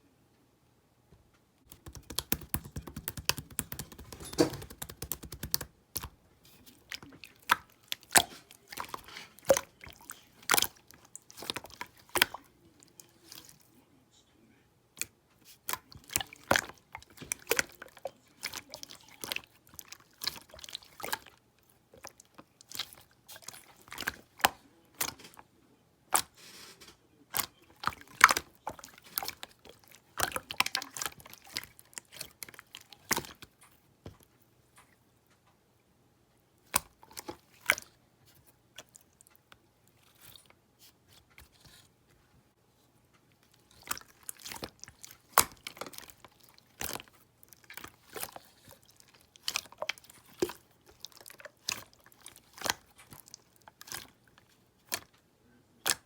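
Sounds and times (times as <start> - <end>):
slime crackling and popping: 1.7 - 6.1.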